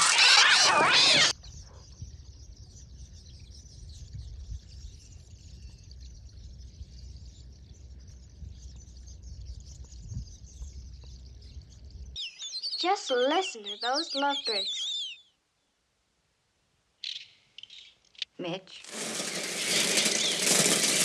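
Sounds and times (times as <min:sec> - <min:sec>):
birds twittering and chirping: 0:00.0 - 0:15.4, 0:17.0 - 0:21.0
low rumble of wind or water: 0:01.6 - 0:12.2.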